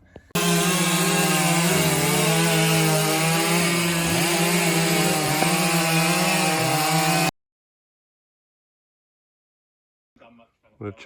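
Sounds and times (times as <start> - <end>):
chainsaw cutting wood: 0.4 - 7.3.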